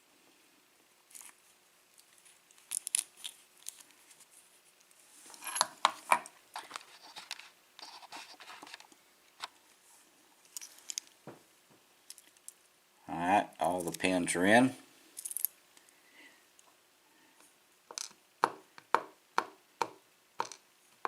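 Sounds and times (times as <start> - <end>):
small metal lock parts clicking: 2.6 - 3.8.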